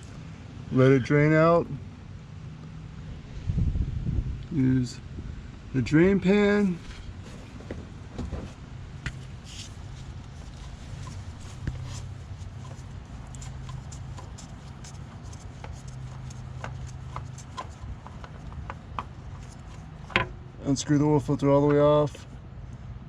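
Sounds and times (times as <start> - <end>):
steady low hum: 0.0 - 23.0
hands clicking and rubbing on oil filter: 7.2 - 20.6.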